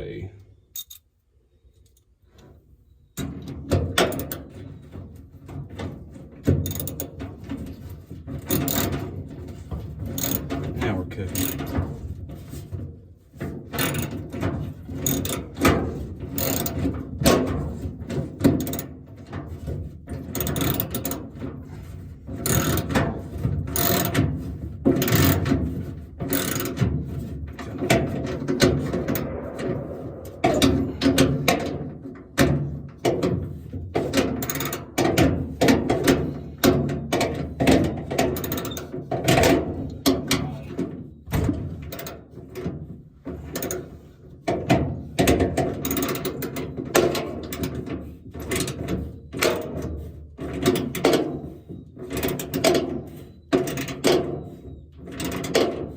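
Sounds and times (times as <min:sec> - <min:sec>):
ratchet wrench clicking: 0:00.8 - 0:01.0, 0:10.2 - 0:10.4, 0:22.5 - 0:22.8.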